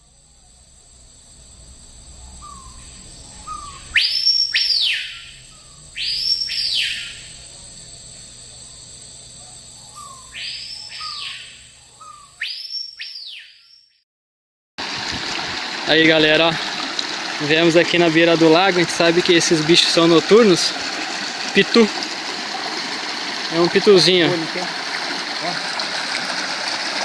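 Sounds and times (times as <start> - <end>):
whistled animal calls: 2.2 - 7.4, 9.4 - 13.9.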